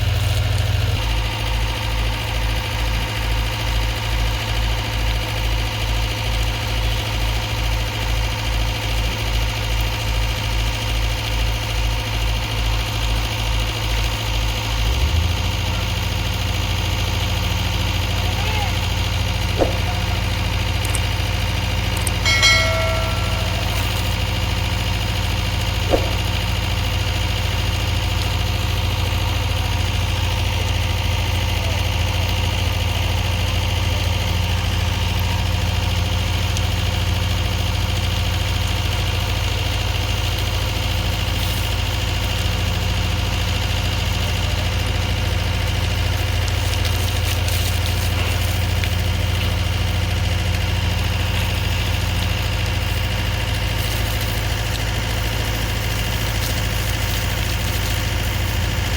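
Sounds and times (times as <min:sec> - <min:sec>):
excavator diesel engine idling: 0:00.0 - 0:58.9.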